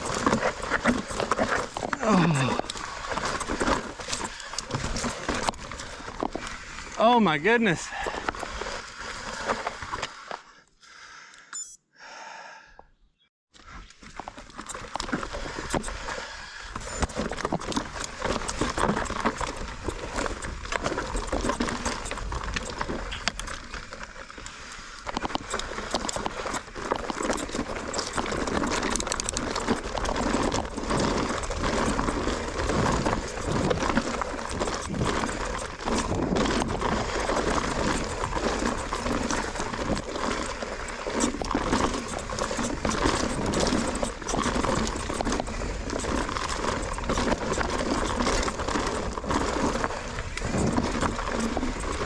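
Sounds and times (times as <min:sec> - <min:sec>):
bike rattling over rocks: 0:00.0 - 0:10.4, 0:13.6 - 0:52.0
wind and tyre noise: 0:00.0 - 0:10.5, 0:13.6 - 0:52.0.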